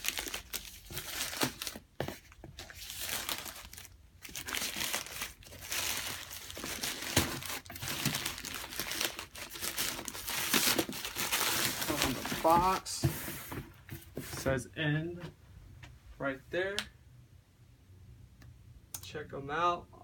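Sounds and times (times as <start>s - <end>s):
packaging crinkling and tearing: 0.0s - 12.9s.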